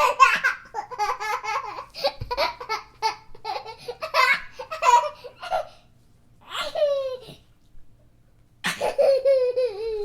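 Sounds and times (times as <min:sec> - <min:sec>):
young child laughing: 0:06.4 - 0:07.5, 0:08.6 - 0:10.0.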